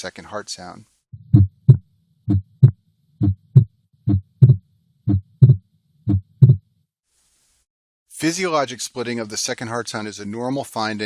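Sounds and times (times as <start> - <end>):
heartbeat through stethoscope: 1.2 - 6.6.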